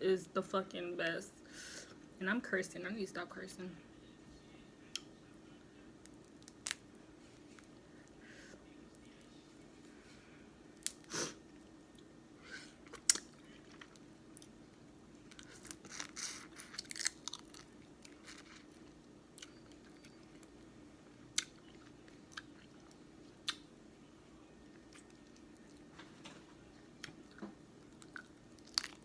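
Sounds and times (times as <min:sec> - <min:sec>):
faint low hum: 0:00.0 - 0:29.0
wet chewing and smacking: 0:21.3 - 0:23.7, 0:27.0 - 0:29.0.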